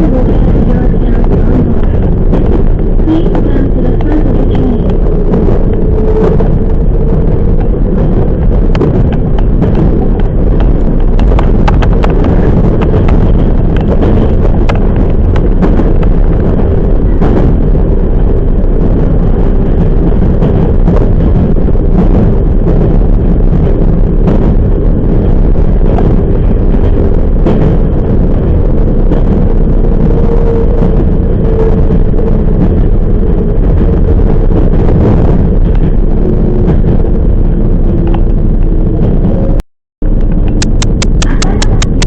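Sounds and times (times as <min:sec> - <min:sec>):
rail clicks and clatter: 0:00.0 - 0:42.0
train wheels rumbling on track: 0:00.0 - 0:42.0.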